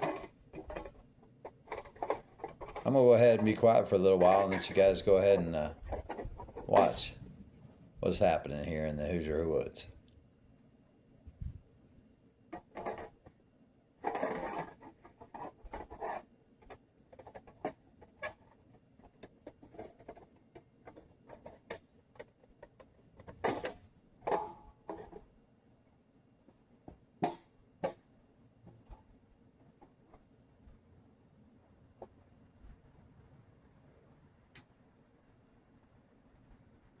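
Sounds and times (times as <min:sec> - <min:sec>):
metal panel scrape: 0:00.0 - 0:07.7, 0:14.0 - 0:16.2.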